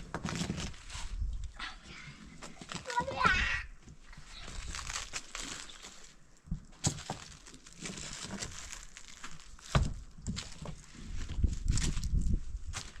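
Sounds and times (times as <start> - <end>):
material rustling and crunching: 0.0 - 1.3, 4.0 - 13.0.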